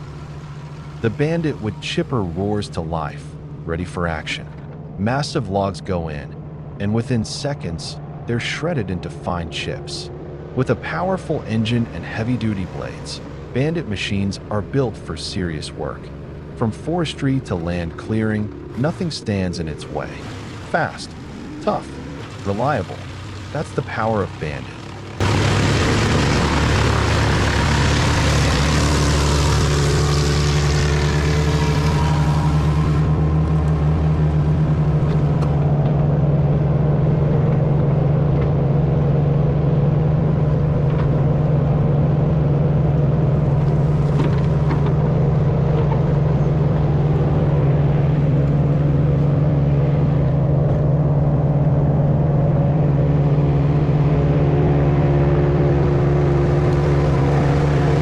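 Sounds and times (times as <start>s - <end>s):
wood chipper engine running: 20.4s - 58.0s.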